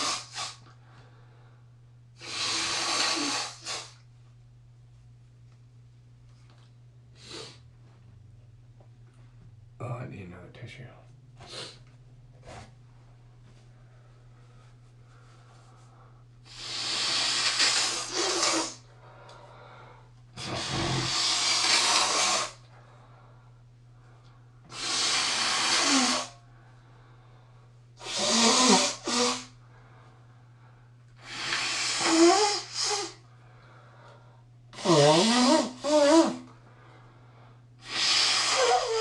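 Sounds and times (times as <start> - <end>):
person blowing nose: 0.0 - 0.7, 2.2 - 4.0, 7.2 - 7.7, 11.4 - 11.8, 16.5 - 18.9, 20.4 - 22.7, 24.7 - 26.4, 28.0 - 29.6, 31.2 - 33.2, 34.7 - 36.5, 37.8 - 39.0.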